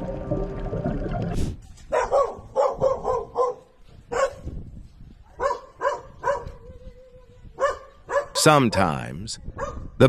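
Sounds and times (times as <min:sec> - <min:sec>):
dog barking: 0:01.9 - 0:04.5, 0:05.3 - 0:06.6, 0:07.6 - 0:08.4, 0:09.6 - 0:09.9.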